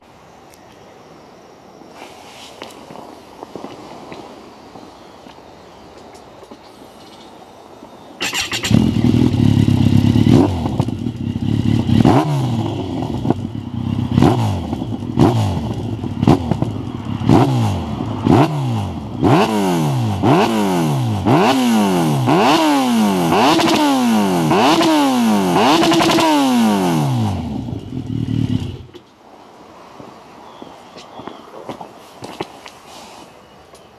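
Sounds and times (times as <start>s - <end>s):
motorcycle engine revving: 8.2s - 29.1s.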